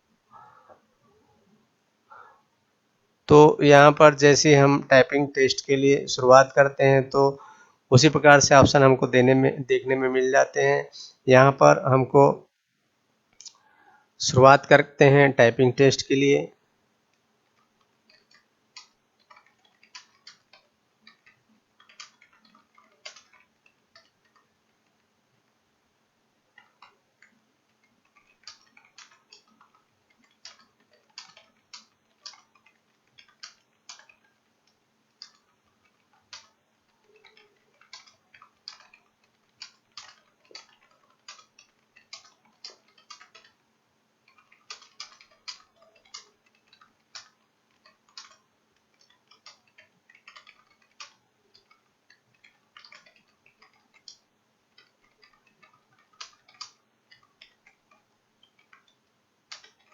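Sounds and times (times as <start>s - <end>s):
faint steady hum: 0.0s - 59.9s
computer keyboard typing: 17.1s - 25.6s, 26.4s - 59.9s.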